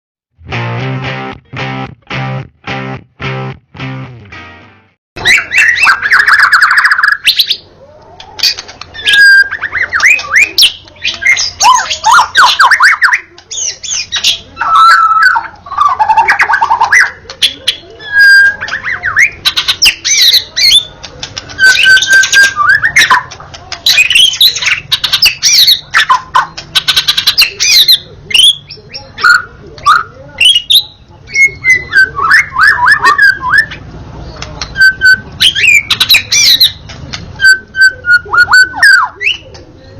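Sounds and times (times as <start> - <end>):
bird singing whistles and trills: 5.2 - 7.6, 9.0 - 17.2, 18.0 - 20.9, 21.6 - 23.2, 23.9 - 33.8, 34.6 - 39.5.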